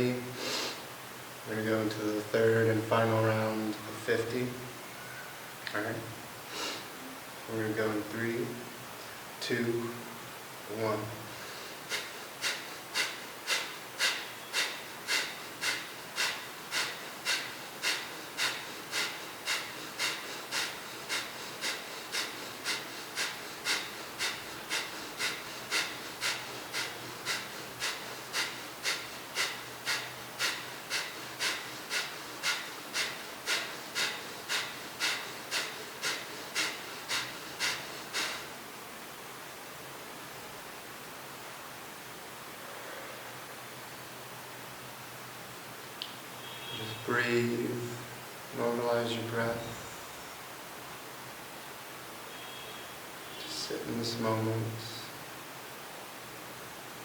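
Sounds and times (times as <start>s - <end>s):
man's forceful nasal exhales: 0.4s - 0.8s, 6.5s - 6.9s, 11.3s - 38.6s.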